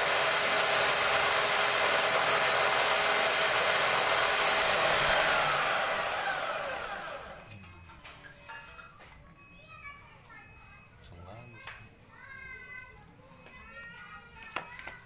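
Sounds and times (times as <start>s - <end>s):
drill-driven sander whirring: 0.0s - 7.5s.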